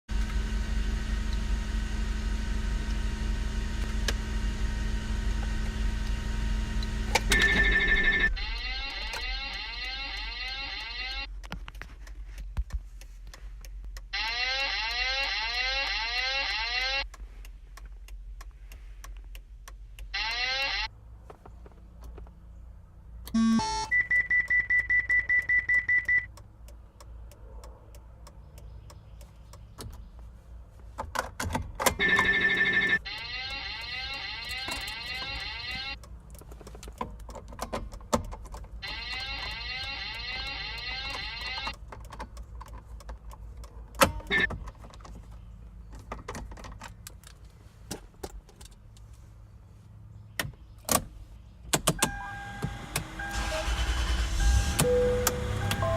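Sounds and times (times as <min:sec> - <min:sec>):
high pulsing beep: 0:23.4 - 0:26.3, 0:52.1 - 0:55.9
tones and clicks: 0:52.0 - 0:55.9
fire alarm sounder sweeping: 0:52.1 - 0:55.9.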